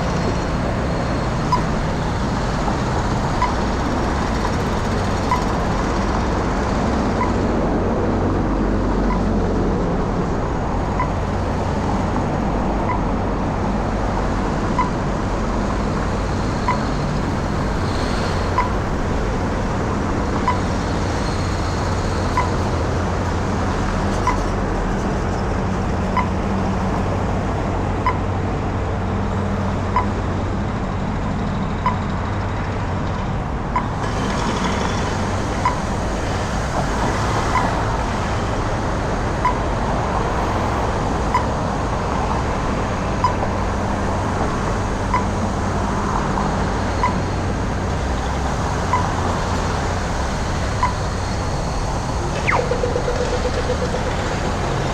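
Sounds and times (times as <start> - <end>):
city street traffic rumble: 0.0 - 54.9
crossing signal beeps: 0.1 - 5.6, 7.2 - 7.4, 9.0 - 9.3, 10.9 - 11.2, 14.7 - 15.1, 16.6 - 18.9, 20.4 - 23.0, 28.0 - 28.3, 45.1 - 45.4, 46.8 - 47.3, 48.2 - 49.8, 50.6 - 54.9.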